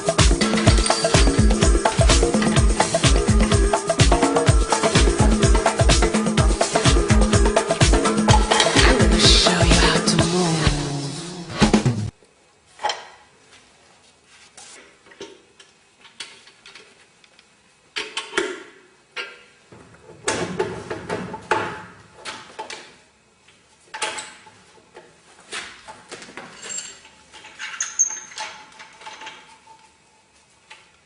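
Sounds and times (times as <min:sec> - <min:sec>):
rattle: 0:00.0 - 0:04.0
hard objects clattering: 0:00.4 - 0:03.1.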